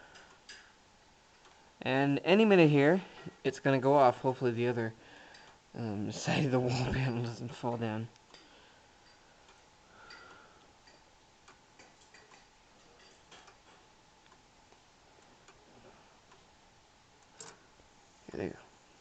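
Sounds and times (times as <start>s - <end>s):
pendulum clock ticking: 7.6s - 17.7s.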